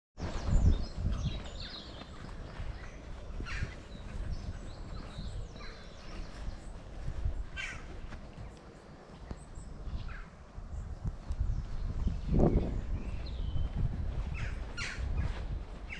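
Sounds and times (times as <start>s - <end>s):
birds chirping and calling: 0.2s - 15.9s
steady low rumble: 0.2s - 15.9s.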